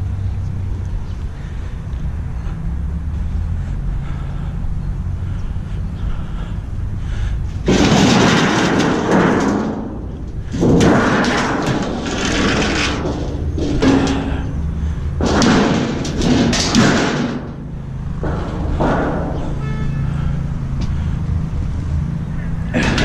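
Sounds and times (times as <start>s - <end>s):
steady low hum: 0.0s - 23.0s
scrap metal clattering: 7.6s - 21.2s, 22.4s - 23.0s.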